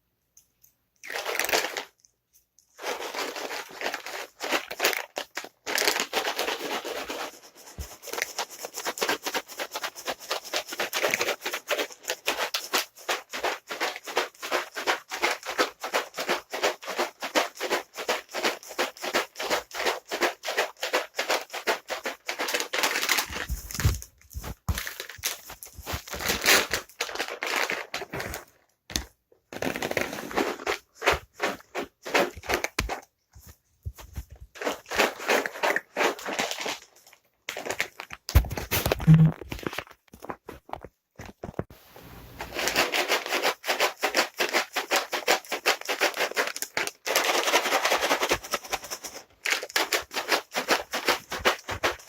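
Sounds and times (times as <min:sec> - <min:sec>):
cat treats rattling in container: 0:01.0 - 0:02.1, 0:02.7 - 0:24.0, 0:24.6 - 0:28.5, 0:34.5 - 0:39.9, 0:42.5 - 0:52.0.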